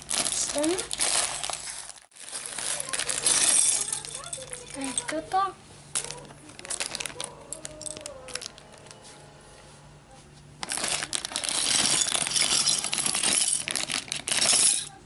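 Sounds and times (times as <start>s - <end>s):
plastic bag crinkling: 0.0s - 5.2s, 5.9s - 9.0s, 10.6s - 15.0s
plastic pieces clicking: 10.6s - 15.0s.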